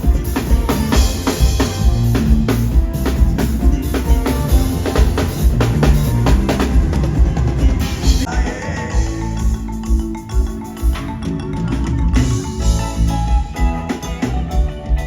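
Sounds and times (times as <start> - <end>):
kick and snare drum beat: 0.0 - 8.6
pop band playing: 0.0 - 15.0.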